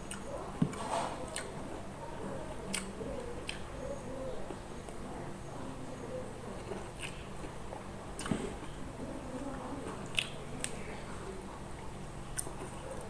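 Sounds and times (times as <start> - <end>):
person chewing wet food: 0.0 - 1.8, 2.5 - 3.8, 6.4 - 13.0
low steady hum: 0.0 - 13.0
lip and teeth clicks: 6.6 - 7.6, 10.0 - 10.8, 12.3 - 13.0.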